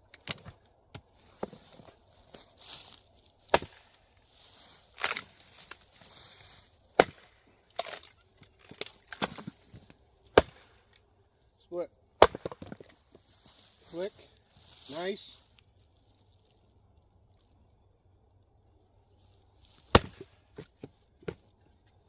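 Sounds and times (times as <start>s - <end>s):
axe chopping wood: 3.5s - 3.9s, 7.0s - 8.1s, 10.3s - 10.7s, 12.2s - 12.9s, 19.9s - 21.4s.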